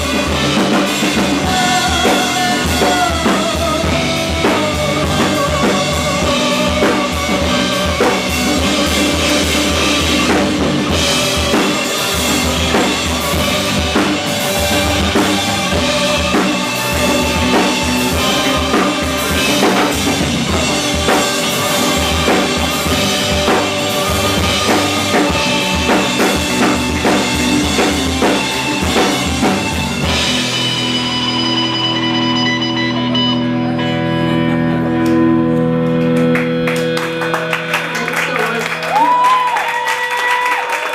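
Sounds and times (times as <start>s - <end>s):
drum kit hitting hard: 0.0s - 31.5s
live rock band playing: 0.0s - 40.9s.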